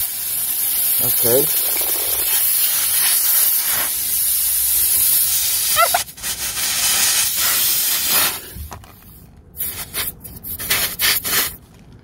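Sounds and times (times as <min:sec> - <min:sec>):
air hissing from tyre: 0:02.3 - 0:08.7, 0:09.6 - 0:11.6.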